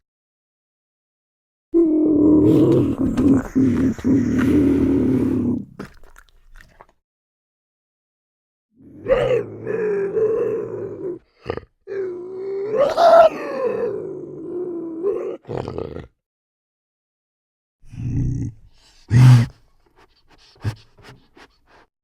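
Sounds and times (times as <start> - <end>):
bobcat grunt: 2.2 - 6.0, 17.9 - 21.9.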